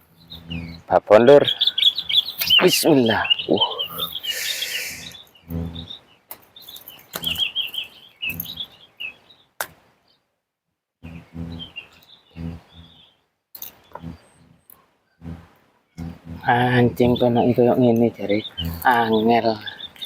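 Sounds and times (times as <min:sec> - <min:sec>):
short low bursts: 0:00.0 - 0:06.0, 0:07.2 - 0:07.6, 0:08.2 - 0:08.7, 0:11.0 - 0:13.0, 0:13.6 - 0:20.0
small birds twittering: 0:00.0 - 0:10.3, 0:11.0 - 0:20.0
brief hiss: 0:04.3 - 0:05.2.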